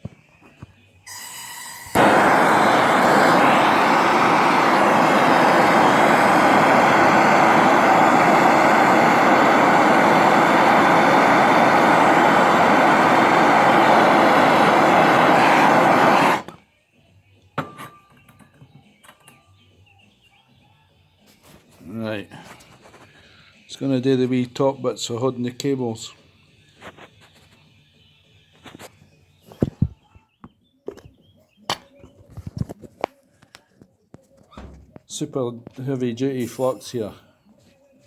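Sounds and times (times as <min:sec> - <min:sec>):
blowtorch flame hissing: 0:01.1 - 0:16.6, 0:36.4 - 0:37.1.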